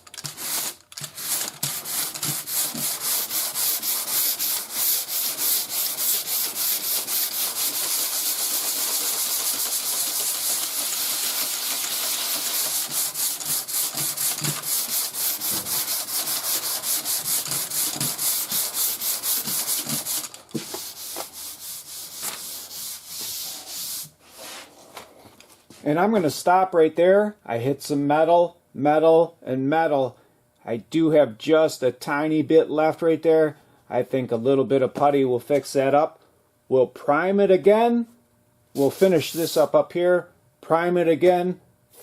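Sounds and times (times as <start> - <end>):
sandpaper rubbing on car panel: 0.4 - 24.6, 38.8 - 39.7.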